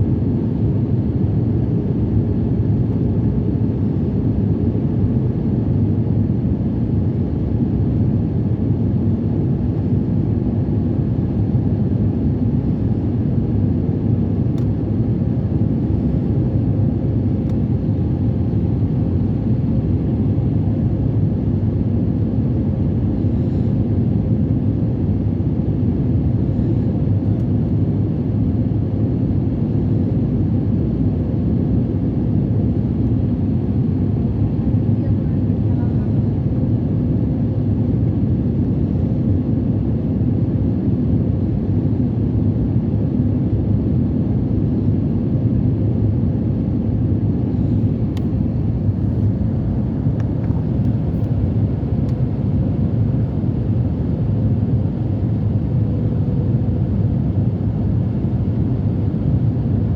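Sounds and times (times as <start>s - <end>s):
engine and airflow rumble: 0.0s - 59.9s
faint steady hum: 47.4s - 59.9s.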